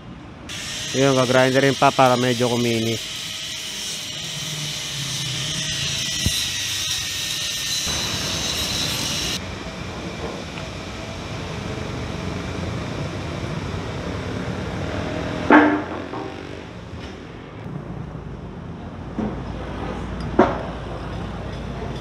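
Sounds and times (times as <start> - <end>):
traffic: 0.0 - 22.0
workshop background noise: 0.2 - 22.0.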